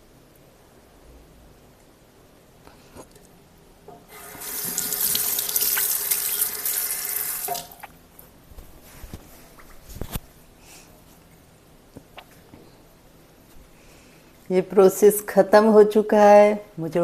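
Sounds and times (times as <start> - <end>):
water tap running into sink: 4.1 - 7.8.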